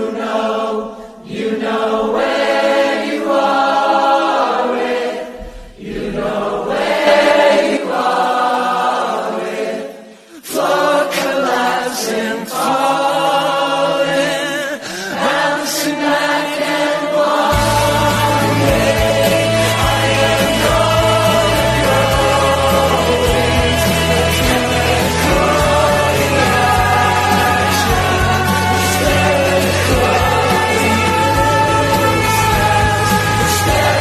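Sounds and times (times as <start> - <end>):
choir-like singing voices: 0.0 - 34.0
low bass line: 17.6 - 34.0.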